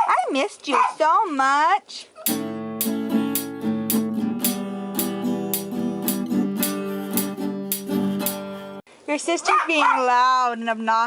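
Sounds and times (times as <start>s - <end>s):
acoustic guitar music: 2.2s - 8.8s.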